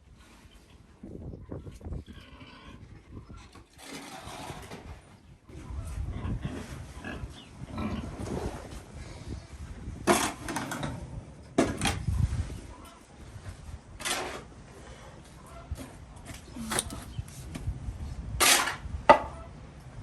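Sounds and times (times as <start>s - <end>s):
pigs grunting: 2.0s - 4.7s, 5.9s - 8.6s.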